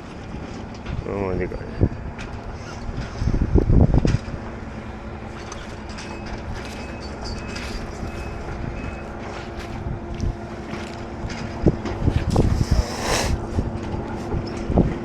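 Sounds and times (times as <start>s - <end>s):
engine humming: 1.9s - 15.0s.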